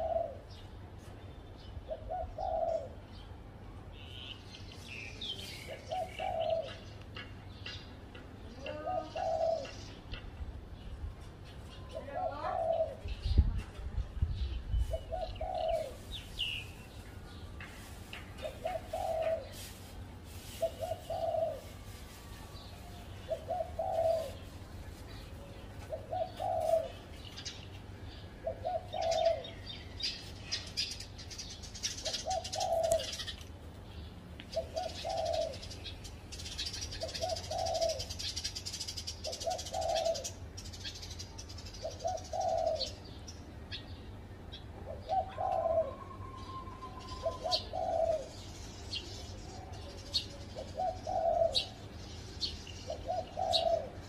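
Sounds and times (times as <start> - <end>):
dove cooing: 0.0 - 0.6, 1.9 - 3.0, 5.6 - 6.9, 8.6 - 10.0, 11.9 - 13.4, 14.9 - 16.2, 18.4 - 22.0, 22.6 - 24.6, 25.2 - 27.5, 28.4 - 30.0, 31.9 - 33.4, 34.5 - 41.0, 41.7 - 43.1, 44.8 - 48.6, 49.5 - 54.0.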